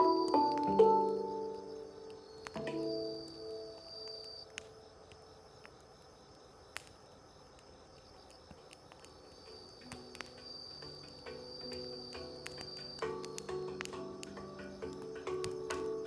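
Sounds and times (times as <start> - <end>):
soft handpan notes: 0.0 - 3.9, 9.8 - 16.0
high insect trill: 0.0 - 16.0
wood fire crackling: 0.0 - 16.0.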